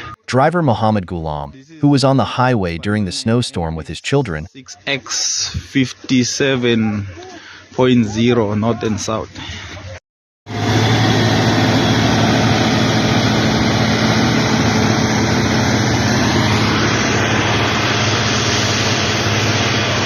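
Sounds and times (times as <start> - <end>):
vehicle engine running: 10.5 - 20.0.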